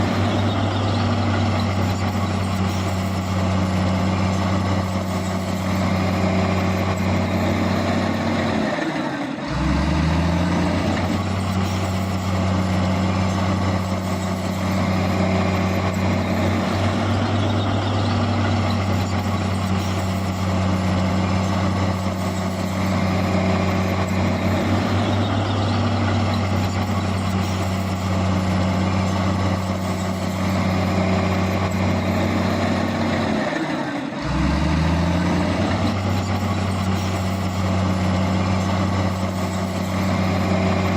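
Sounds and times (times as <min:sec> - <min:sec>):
heavy diesel engine running: 0:00.0 - 0:40.9.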